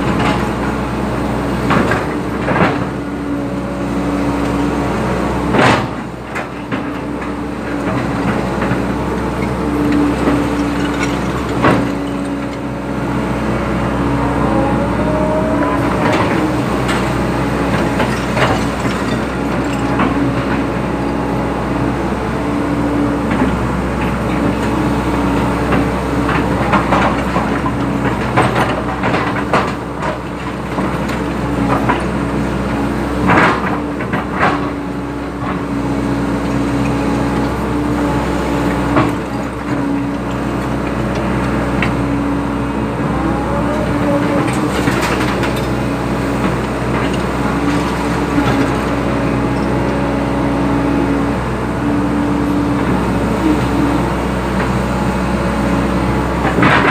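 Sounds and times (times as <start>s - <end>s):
excavator diesel engine running: 0.0s - 56.9s
knocks and clanks of digging: 5.5s - 12.6s, 15.8s - 20.7s, 43.4s - 49.8s, 56.4s - 56.9s.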